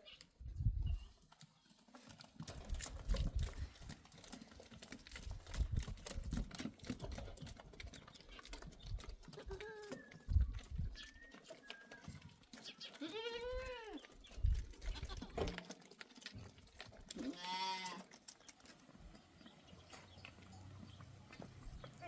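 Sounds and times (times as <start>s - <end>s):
farm animal bleating: 9.2s - 10.3s, 12.6s - 14.2s, 14.8s - 15.8s, 17.1s - 18.2s.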